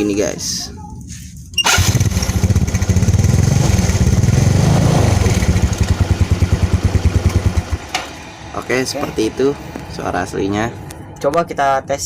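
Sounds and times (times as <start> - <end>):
motorcycle engine revving and idling: 1.6 - 10.9.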